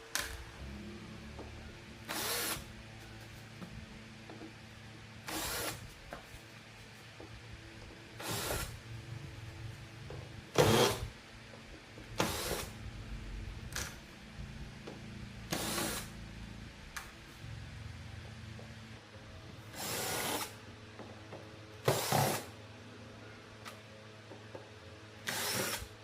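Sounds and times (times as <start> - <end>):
low hum: 0.0 - 19.8.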